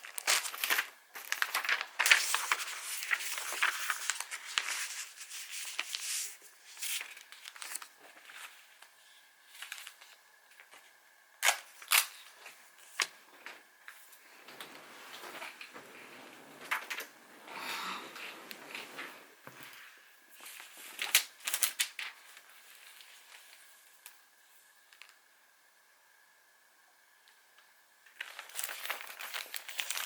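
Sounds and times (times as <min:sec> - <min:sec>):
packaging crinkling and tearing: 0:00.0 - 0:13.6, 0:20.9 - 0:24.2, 0:28.1 - 0:30.0.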